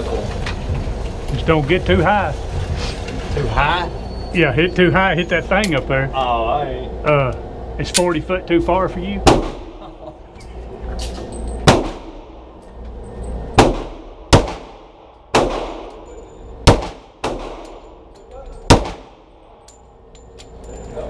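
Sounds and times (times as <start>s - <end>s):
pistol shots echoing indoors: 9.3s - 9.7s, 11.6s - 12.2s, 13.6s - 16.0s, 16.6s - 17.9s, 18.6s - 19.3s.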